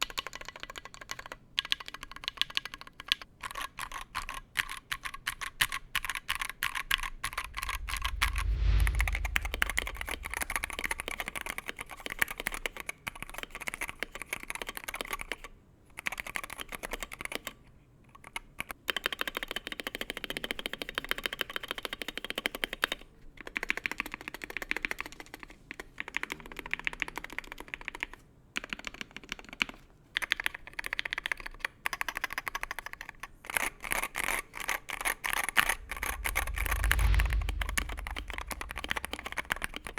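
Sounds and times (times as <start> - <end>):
low thud: 7.2 - 11.5, 35.6 - 39.9.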